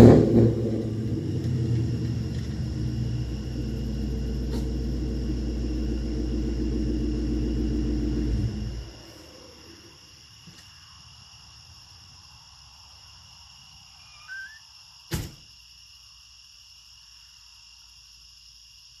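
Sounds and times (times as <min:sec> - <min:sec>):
engine rumble: 0:00.0 - 0:10.1
high insect chirring: 0:00.8 - 0:19.0
short bird-like chirp: 0:14.1 - 0:14.7.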